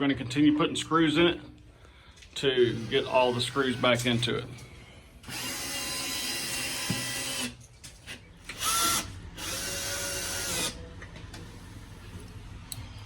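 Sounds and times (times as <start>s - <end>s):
power drill driving screws: 2.7s - 4.2s, 5.2s - 7.6s, 8.5s - 10.8s.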